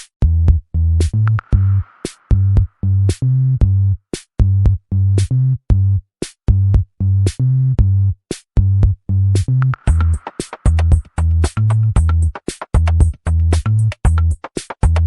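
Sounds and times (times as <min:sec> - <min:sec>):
electronic music with drum machine: 0:09.8 - 0:15.0.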